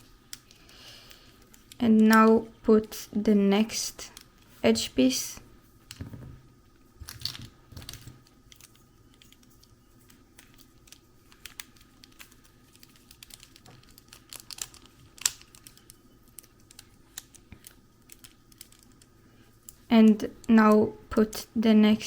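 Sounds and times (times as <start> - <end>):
plastic cube pieces clicking: 10.4 - 19.1.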